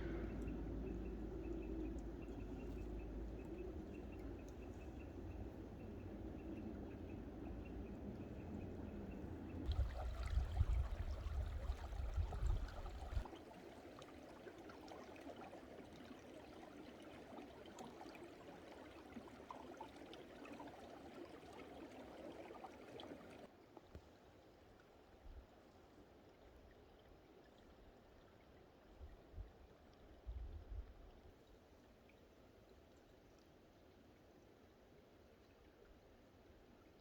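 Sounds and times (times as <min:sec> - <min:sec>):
wind buffeting microphone: 0:00.0 - 0:13.3
mountain stream flowing: 0:00.0 - 0:28.9.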